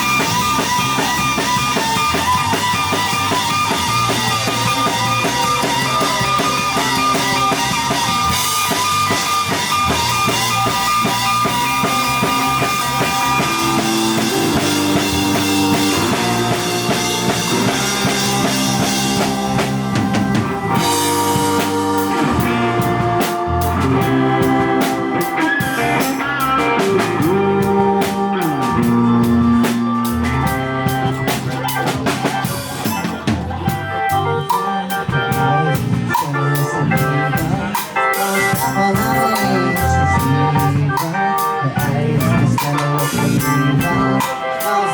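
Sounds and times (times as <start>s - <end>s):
bass: 0.0s - 44.9s
drum kit: 0.0s - 44.9s
guitar: 0.0s - 44.9s.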